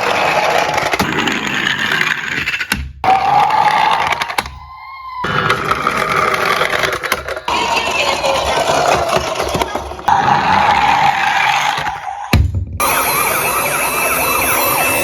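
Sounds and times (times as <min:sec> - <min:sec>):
emergency vehicle siren wailing: 0:10.1 - 0:15.0.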